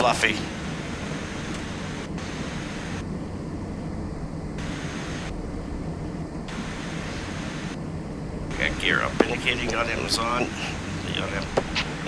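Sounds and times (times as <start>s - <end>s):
airflow rushing in cockpit: 0.0s - 12.0s
low jet engine hum: 0.0s - 12.0s.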